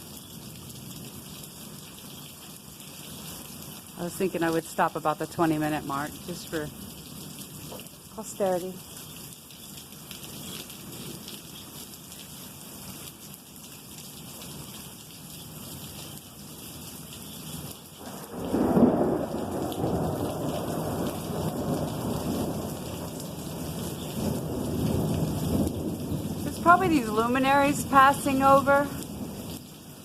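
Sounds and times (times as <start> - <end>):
rain falling: 0.0 - 30.0
rolling thunder rumble: 18.0 - 29.4.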